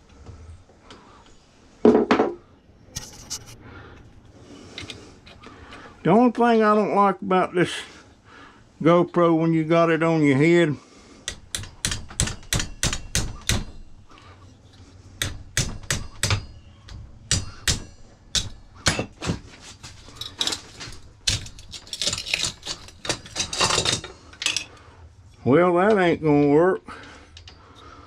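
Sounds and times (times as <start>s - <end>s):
hammer tapping on metal: 11.3s - 13.8s, 15.2s - 19.4s
scraping rasp: 17.3s - 24.2s.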